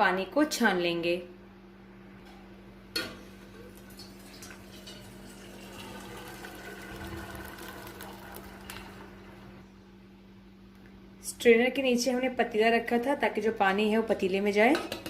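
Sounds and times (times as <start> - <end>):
water splashing into pot: 3.7 - 9.1
water pouring through strainer: 3.9 - 9.2.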